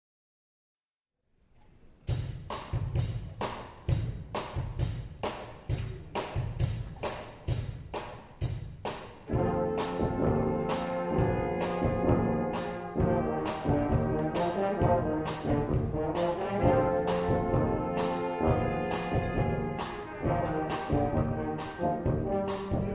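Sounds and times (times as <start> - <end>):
drum beat: 2.3 - 22.9
brass band music: 4.7 - 22.9
horns holding notes: 9.3 - 22.9.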